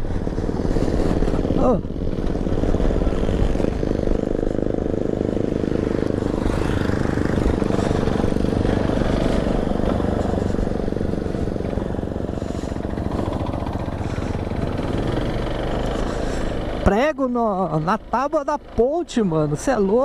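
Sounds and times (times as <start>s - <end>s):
motorcycle engine running: 0.0s - 20.0s.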